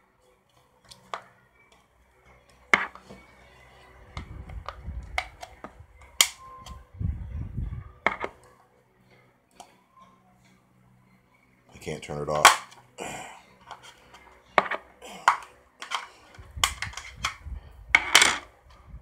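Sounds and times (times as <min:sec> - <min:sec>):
plastic clicks and snaps: 0:04.2 - 0:06.8, 0:12.4 - 0:12.9, 0:13.6 - 0:17.4.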